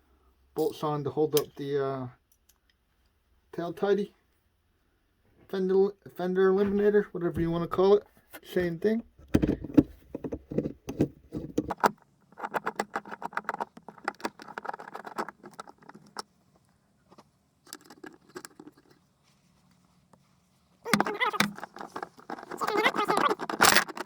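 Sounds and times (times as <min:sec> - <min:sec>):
metal bolts clinking and rattling: 0:10.2 - 0:16.4, 0:17.6 - 0:19.0, 0:20.9 - 0:24.0.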